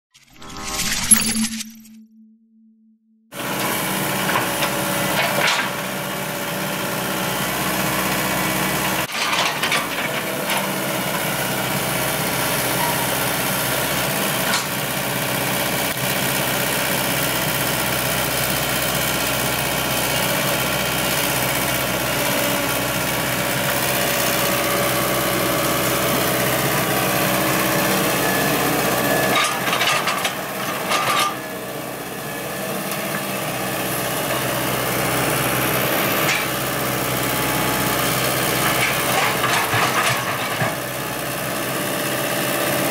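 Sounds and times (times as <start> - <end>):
excavator diesel engine running: 3.3 - 42.9
machine clanks and knocks: 38.7 - 40.8.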